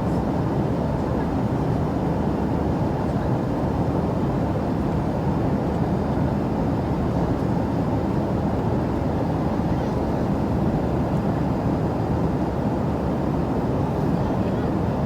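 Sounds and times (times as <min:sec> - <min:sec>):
airliner cabin engine rumble: 0:08.9 - 0:15.0.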